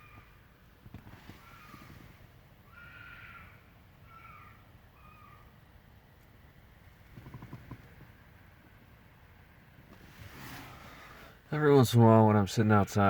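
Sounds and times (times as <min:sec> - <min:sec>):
animal screaming calls: 0:02.7 - 0:05.4.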